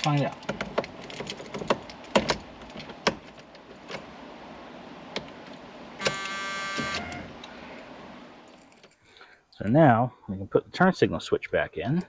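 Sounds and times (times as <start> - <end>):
car warning buzzer: 6.0 - 7.3.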